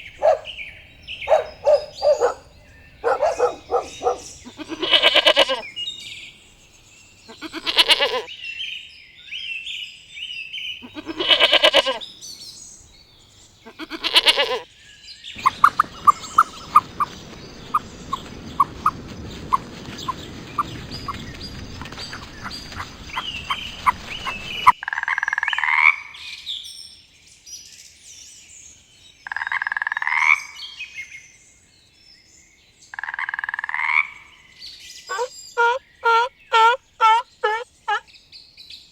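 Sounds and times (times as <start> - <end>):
pitched animal calls: 0.0 - 5.6, 7.3 - 8.3, 10.8 - 12.0, 13.7 - 14.6, 35.1 - 38.0
rising animal calls: 0.0 - 5.7, 10.8 - 12.0, 35.1 - 38.0.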